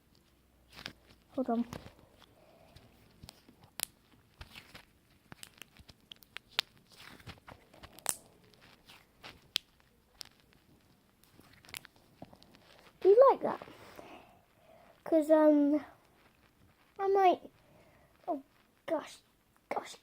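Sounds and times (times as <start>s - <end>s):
slime popping and crackling: 0.2s - 13.8s.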